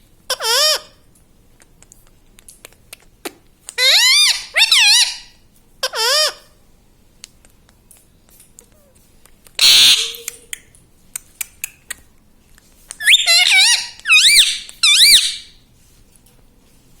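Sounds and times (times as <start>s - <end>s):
parakeet warbling calls: 3.8s - 5.3s, 9.6s - 10.3s, 13.0s - 15.5s
parakeet squawk: 3.8s - 6.5s, 9.6s - 10.3s, 13.0s - 15.6s.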